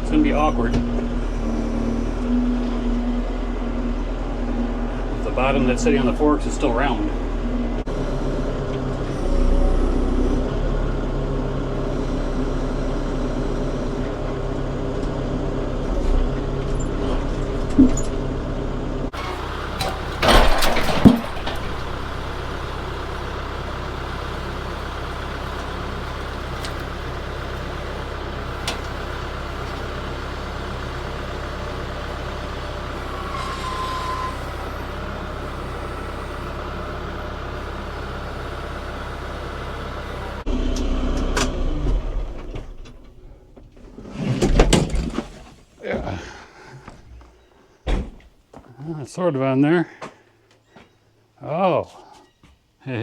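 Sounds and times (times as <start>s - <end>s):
tractor engine running: 0.0s - 48.6s
clattering knocks: 19.1s - 27.2s.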